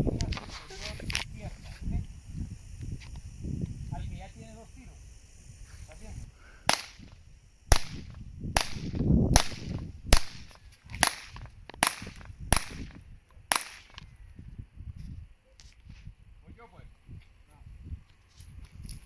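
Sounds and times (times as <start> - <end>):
pistol shots: 6.7 - 7.0, 7.7 - 12.9.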